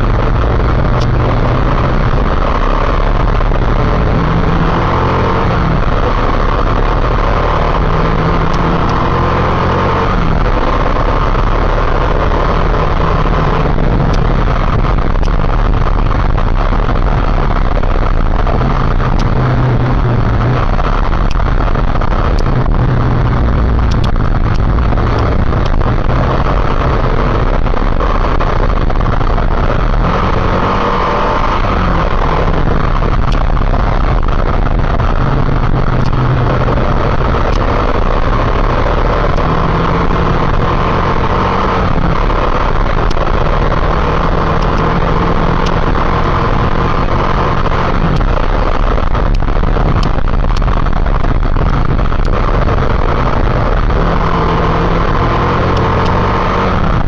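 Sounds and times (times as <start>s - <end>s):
motorcycle engine running: 0.0s - 57.0s
wind rushing on microphone: 0.0s - 57.0s.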